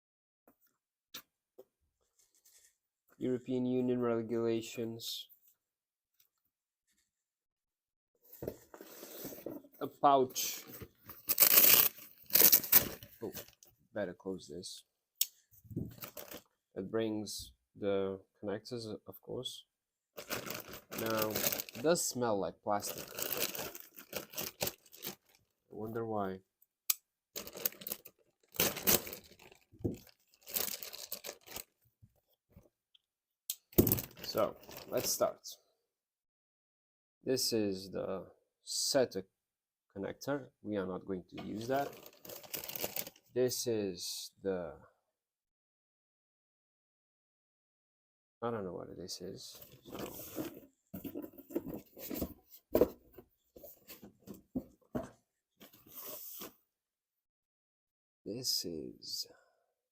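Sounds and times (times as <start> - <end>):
plastic packaging tearing and crinkling: 11.2 - 13.0, 20.2 - 22.0, 22.8 - 25.4, 27.4 - 31.6, 41.8 - 43.2
cables rustling and rubbing: 20.2 - 25.4, 27.4 - 31.7, 49.5 - 54.7.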